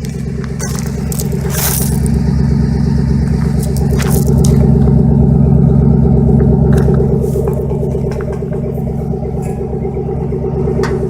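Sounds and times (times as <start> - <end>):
scrapes and crunches: 0.0 - 2.4, 3.2 - 5.0
engine idling: 0.0 - 11.0.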